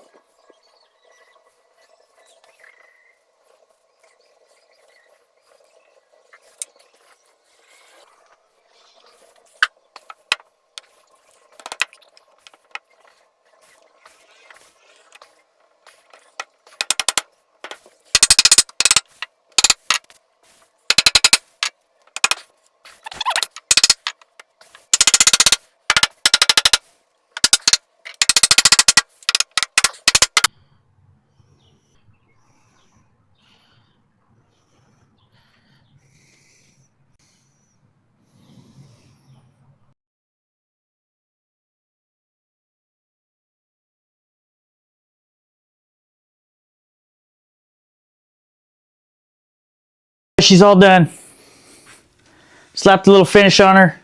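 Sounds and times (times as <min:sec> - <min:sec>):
camera shutter clicking in bursts: 0:16.8 - 0:20.1, 0:20.9 - 0:21.6, 0:23.2 - 0:26.8, 0:27.4 - 0:30.5.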